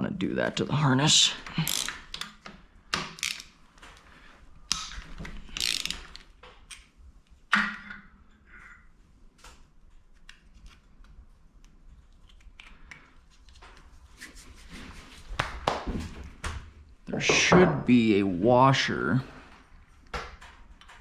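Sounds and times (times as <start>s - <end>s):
metallic clicks of tools: 1.4s - 3.5s, 4.7s - 6.9s
hand ratchet clicking: 1.5s - 2.3s, 5.5s - 6.2s.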